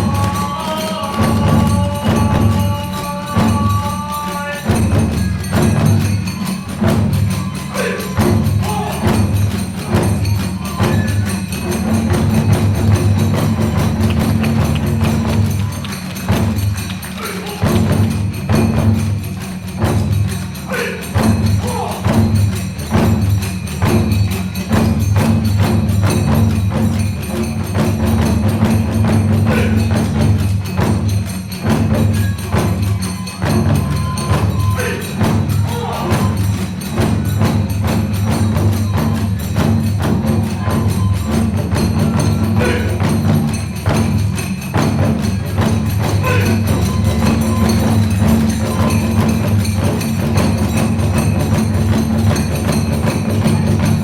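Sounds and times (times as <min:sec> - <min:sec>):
bamboo flutes: 0:00.0 - 0:18.1, 0:29.4 - 0:30.2, 0:32.0 - 0:44.1, 0:46.0 - 0:49.5
hand cymbals clashing: 0:00.0 - 0:54.0
taiko drums beating: 0:00.0 - 0:54.0.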